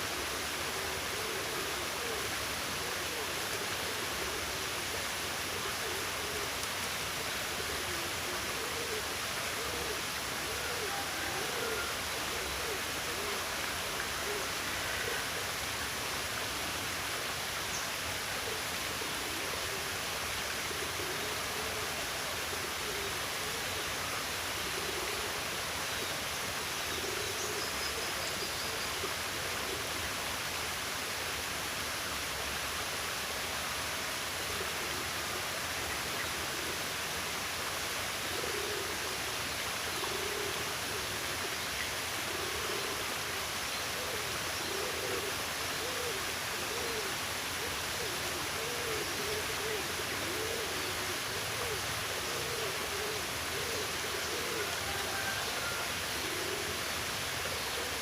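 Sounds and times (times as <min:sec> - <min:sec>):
water rushing: 0:00.0 - 0:58.0
bird hooting faintly: 0:00.8 - 0:04.9, 0:07.6 - 0:13.5, 0:14.1 - 0:15.5, 0:38.3 - 0:39.3, 0:39.9 - 0:41.6, 0:42.2 - 0:56.8.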